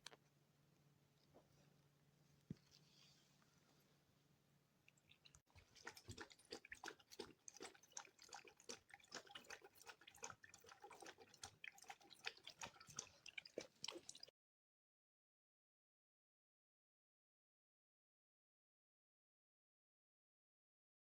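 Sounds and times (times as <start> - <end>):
pet lapping water: 4.9 - 14.3.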